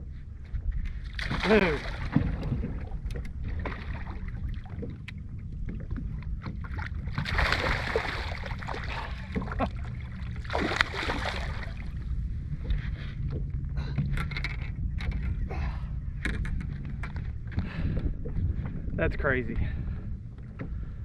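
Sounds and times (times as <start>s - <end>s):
steady low rumble: 0.0s - 21.0s
water lapping: 0.9s - 14.1s
fish splashing at water surface: 7.2s - 9.2s, 10.4s - 11.7s.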